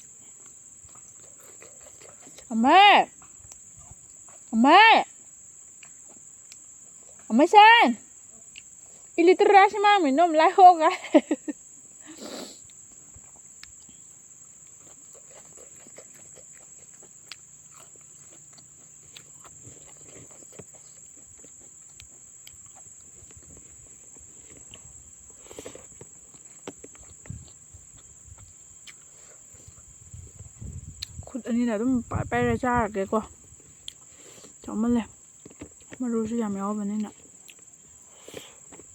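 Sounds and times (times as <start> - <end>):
person eating: 0.0 - 2.5, 14.5 - 30.0, 33.6 - 34.7, 37.1 - 38.9
insects chirring: 0.0 - 38.9.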